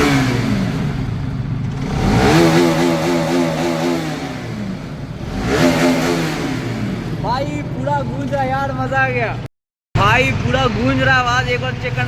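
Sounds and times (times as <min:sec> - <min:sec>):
motorcycle engine revving echoing: 0:00.0 - 0:09.4.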